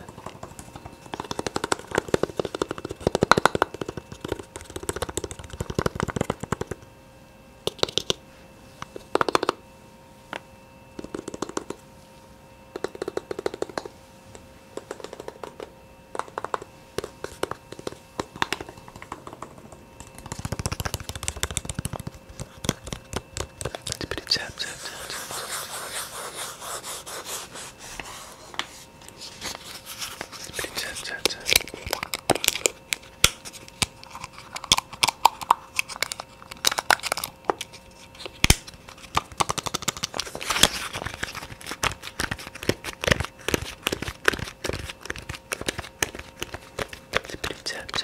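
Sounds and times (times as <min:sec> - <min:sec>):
soft rapid tapping: 0:14.8 - 0:24.2.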